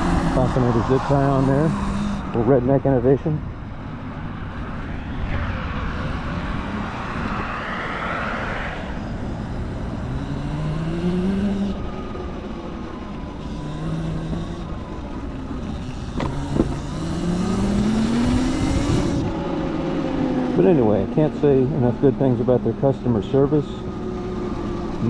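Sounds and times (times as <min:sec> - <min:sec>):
electric motor whining: 0:00.0 - 0:02.7, 0:08.8 - 0:19.6
wind and road noise: 0:00.0 - 0:25.0.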